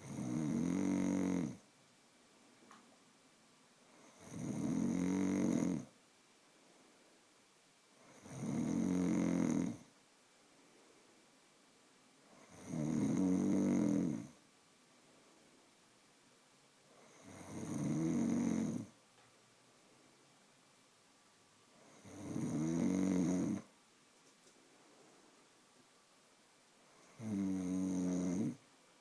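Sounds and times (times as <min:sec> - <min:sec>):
woman snoring: 0:00.0 - 0:01.6, 0:04.0 - 0:05.9, 0:08.1 - 0:09.8, 0:12.4 - 0:14.3, 0:17.0 - 0:18.9, 0:21.9 - 0:23.7, 0:27.0 - 0:28.6.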